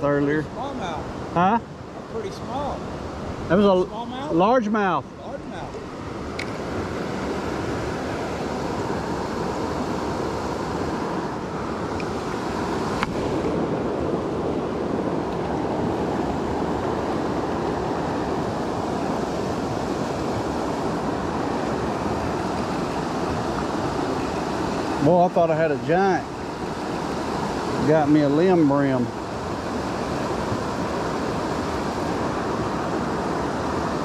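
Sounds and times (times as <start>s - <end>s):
creek water rushing: 0.0s - 34.0s.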